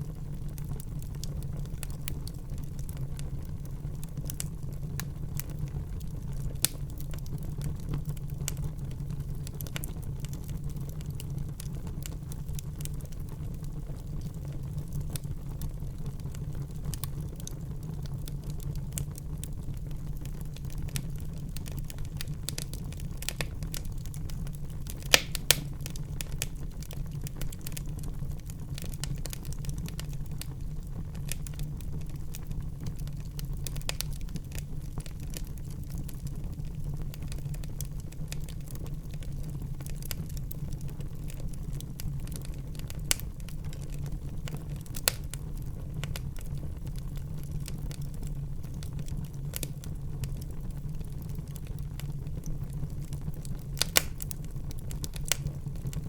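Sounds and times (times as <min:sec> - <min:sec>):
fire crackling: 0:00.0 - 0:56.0
wood fire rumbling: 0:00.0 - 0:56.0
sharp fire pops: 0:20.8 - 0:28.1, 0:44.8 - 0:46.5, 0:53.5 - 0:56.0.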